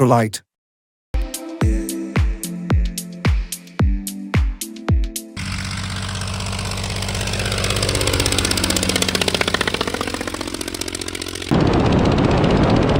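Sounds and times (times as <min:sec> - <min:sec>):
ultralight aircraft engine and propeller: 0:05.4 - 0:12.9.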